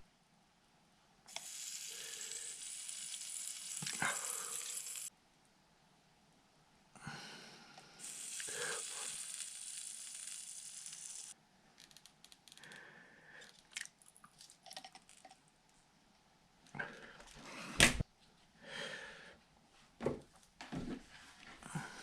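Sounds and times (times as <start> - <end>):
solder sizzling: 1.3 - 5.1, 8.0 - 11.4.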